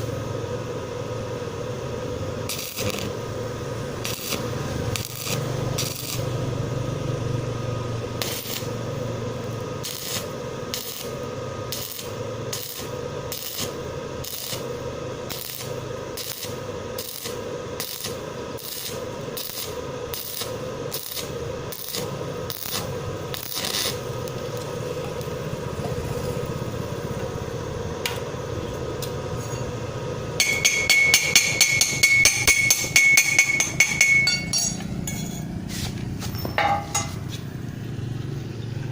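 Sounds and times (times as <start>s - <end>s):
steady hum: 0.0s - 38.9s
hammer tapping on metal: 30.4s - 35.4s, 36.4s - 37.2s
metal scraping strokes: 30.4s - 37.5s.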